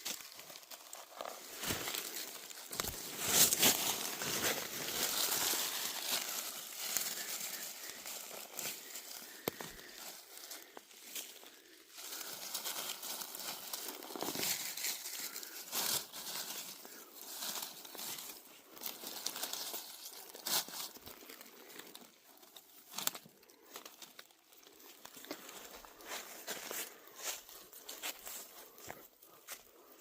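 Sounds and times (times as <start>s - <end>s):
dry leaves crunching: 0.0s - 22.1s.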